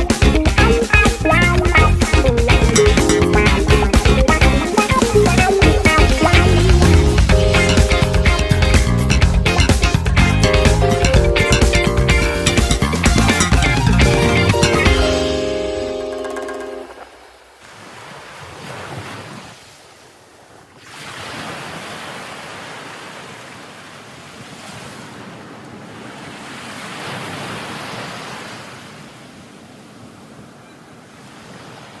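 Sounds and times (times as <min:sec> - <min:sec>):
sea waves breaking on a beach: 0:14.9 - 0:32.0.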